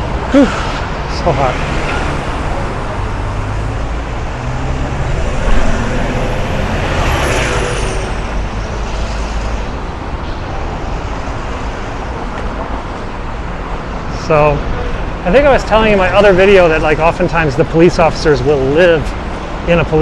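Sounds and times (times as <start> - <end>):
road traffic rumble: 0.0 - 20.0
burst of noise: 0.4 - 9.0.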